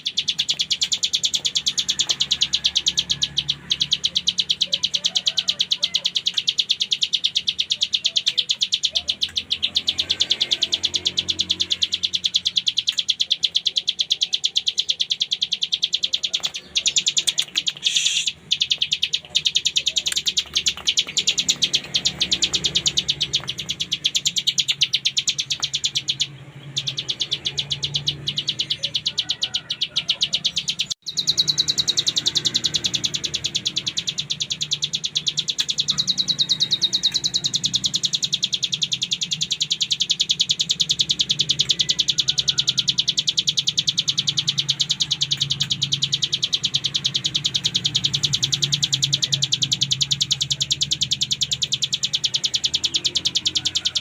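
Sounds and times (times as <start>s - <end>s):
bird singing a rattling trill: 0.0s - 54.0s.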